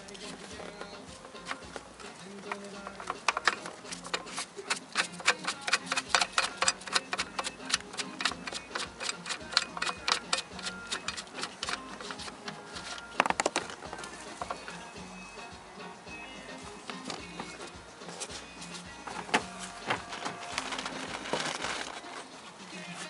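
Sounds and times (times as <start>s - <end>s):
sharp clicks and ticks: 2.5s - 12.6s.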